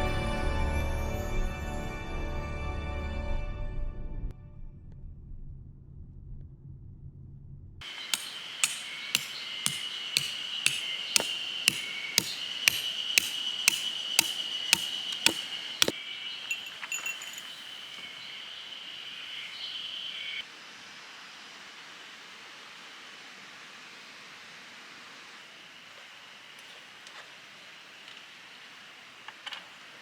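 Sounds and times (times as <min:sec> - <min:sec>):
insects droning: 0:07.8 - 0:21.2
hammer striking metal peg: 0:08.1 - 0:16.0.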